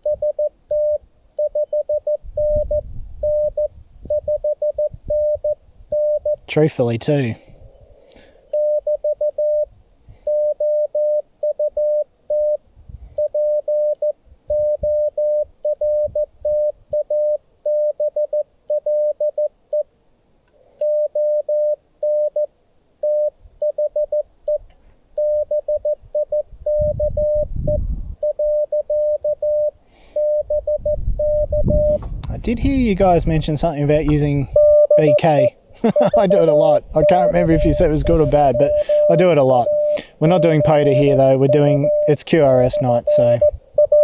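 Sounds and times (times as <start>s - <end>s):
morse code tone: 0.0s - 6.5s, 8.5s - 9.7s, 10.3s - 12.6s, 13.2s - 19.9s, 20.8s - 24.6s, 25.2s - 32.0s, 34.0s - 44.0s.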